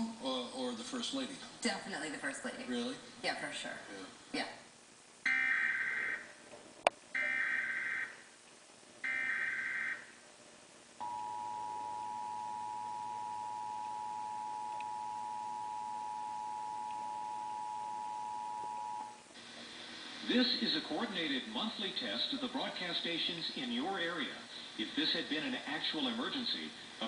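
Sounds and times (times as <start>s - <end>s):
two-tone attention signal: 11.0s - 19.2s.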